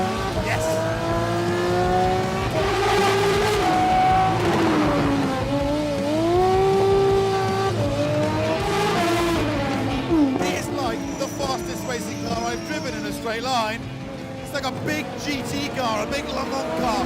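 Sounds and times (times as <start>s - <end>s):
engine howling at high revs: 0.0s - 17.0s.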